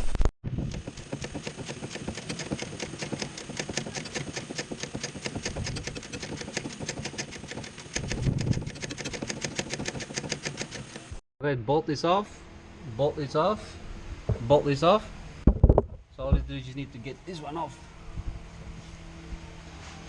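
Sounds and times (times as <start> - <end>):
ratchet clicking: 0.6 - 11.2
low knock: 15.4 - 16.6.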